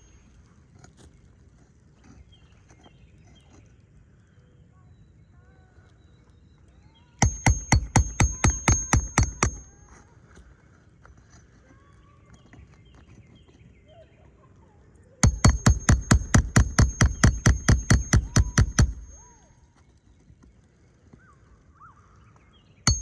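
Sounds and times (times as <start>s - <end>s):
birds chirping faintly: 0.0s - 23.0s
hammer strikes on a roof: 7.2s - 9.8s, 15.2s - 19.4s.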